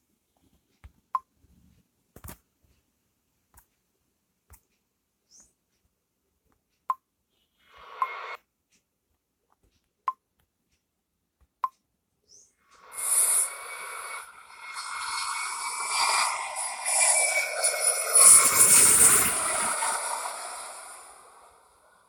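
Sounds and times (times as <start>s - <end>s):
rushing jet engine sound effect: 12.8s - 22.0s.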